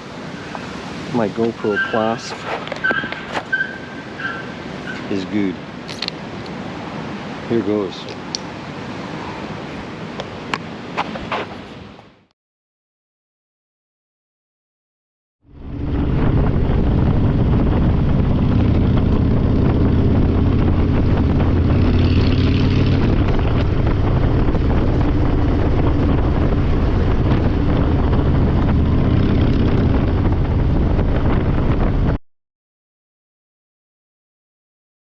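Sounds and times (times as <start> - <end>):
wind rush on microphone: 15.4 - 32.2
motorcycle engine running loud: 15.6 - 31.9.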